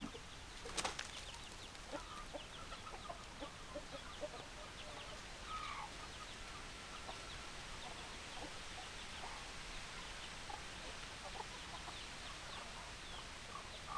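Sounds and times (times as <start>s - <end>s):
hens clucking: 0.0s - 6.4s.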